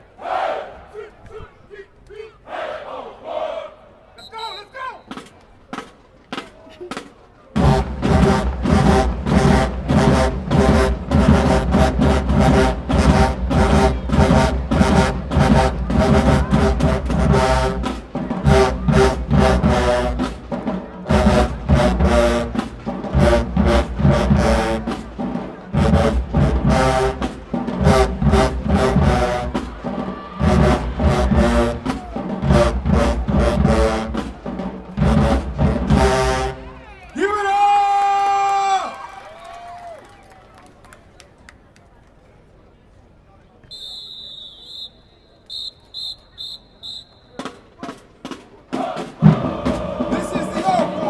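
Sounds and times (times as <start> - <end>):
marching band playing: 4.3 - 37.6, 45.5 - 51.0
drumline beat: 4.4 - 36.8, 46.8 - 51.0
brass chords: 7.6 - 37.0, 48.7 - 51.0.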